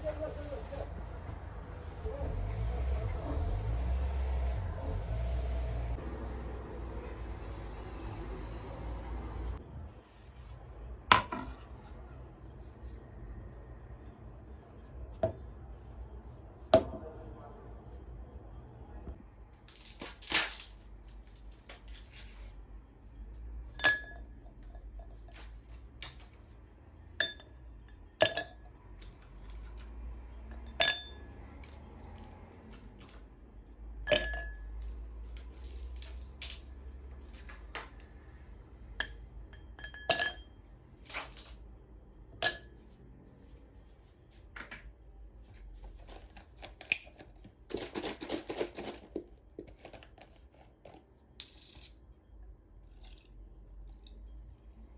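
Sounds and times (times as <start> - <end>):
dishes and utensils clinking: 23.8 - 26.3, 27.1 - 29.8, 30.5 - 31.8, 34.1 - 34.9, 38.9 - 41.5, 42.3 - 43.0.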